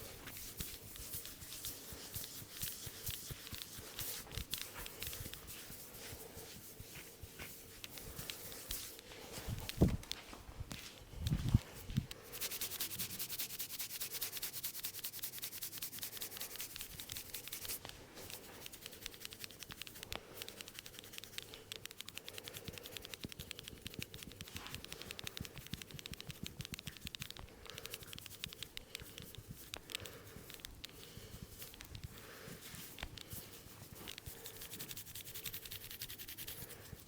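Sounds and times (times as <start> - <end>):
hands rubbing through hair: 0.0 - 37.0.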